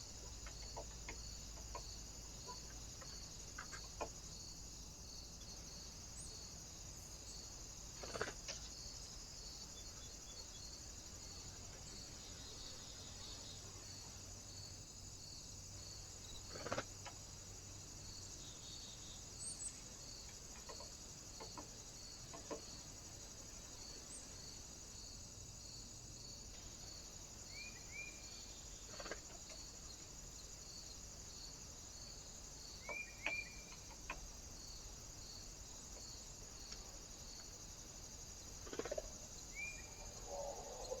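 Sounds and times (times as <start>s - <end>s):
bird chirps: 32.8s - 33.8s, 39.5s - 41.0s.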